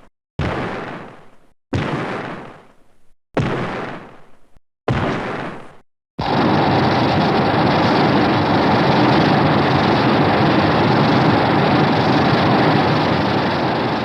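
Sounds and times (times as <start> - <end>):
loud rushing rumble: 6.2 - 14.0.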